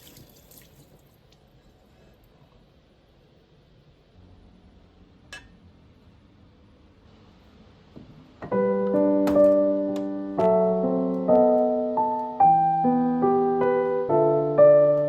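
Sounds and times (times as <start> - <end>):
slow piano chords: 8.3 - 15.0.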